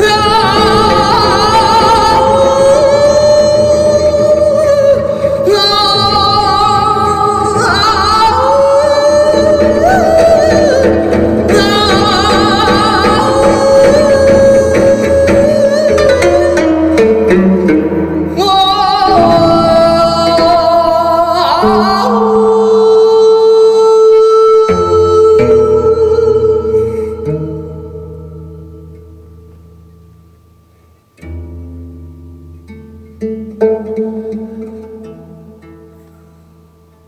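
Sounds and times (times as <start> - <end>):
person singing with vibrato: 0.0 - 29.2
instrumental accompaniment: 0.0 - 37.0.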